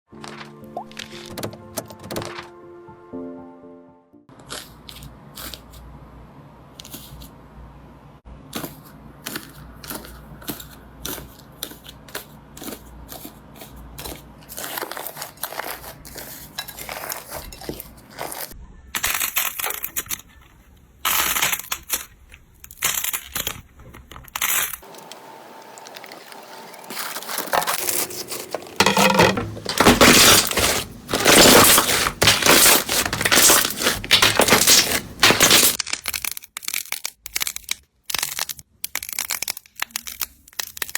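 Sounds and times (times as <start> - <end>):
slime crackling and popping: 29.9 - 40.9.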